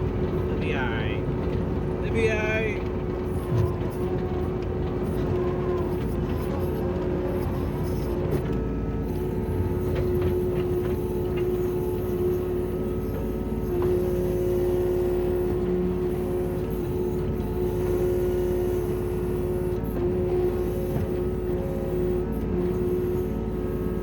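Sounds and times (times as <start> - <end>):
mini excavator engine droning: 0.0 - 24.0.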